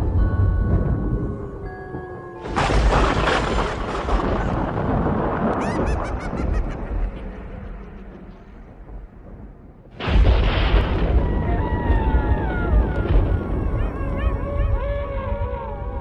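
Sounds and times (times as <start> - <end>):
loud noisy crash: 2.4 - 6.5, 10.0 - 11.4.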